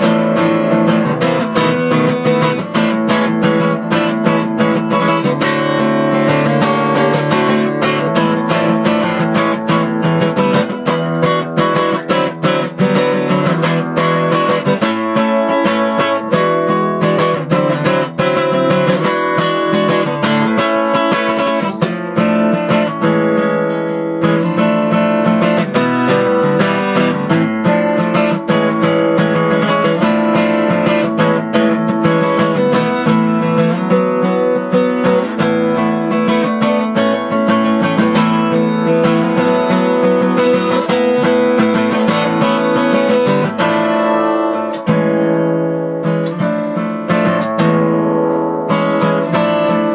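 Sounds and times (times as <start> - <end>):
acoustic guitar playing: 0.0 - 49.9.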